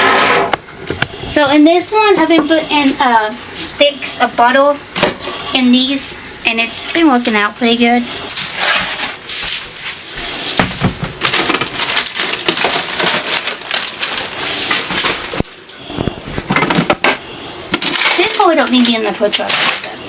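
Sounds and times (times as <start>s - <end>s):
packaging crackling and rustling: 8.3s - 16.9s, 17.7s - 20.0s
containers clicking and knocking: 10.6s - 15.4s.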